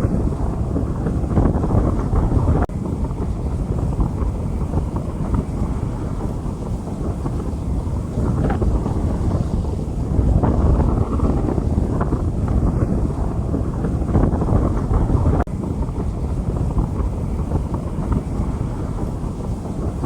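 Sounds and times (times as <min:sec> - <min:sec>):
rain falling on street: 0:00.0 - 0:20.0
wind buffeting microphone: 0:00.0 - 0:20.0.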